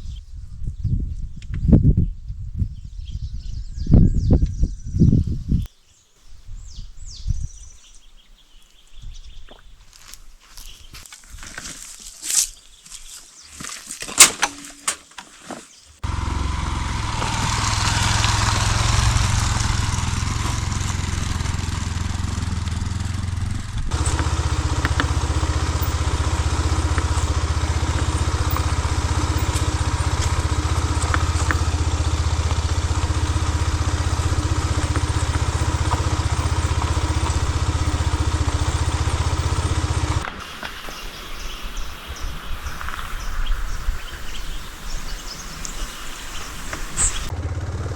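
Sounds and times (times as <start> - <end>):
outdoor background sound: 4.4 - 47.9
motorcycle engine running: 16.0 - 41.8, 44.4 - 47.9.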